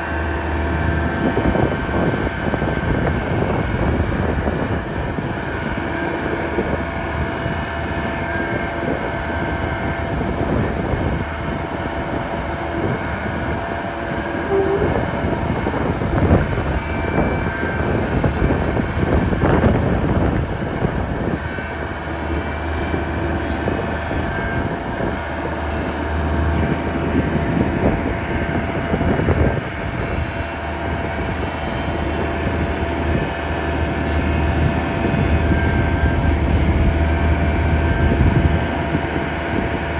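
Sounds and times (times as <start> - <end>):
excavator diesel engine running: 9.0 - 27.4
held higher tones: 14.4 - 15.6.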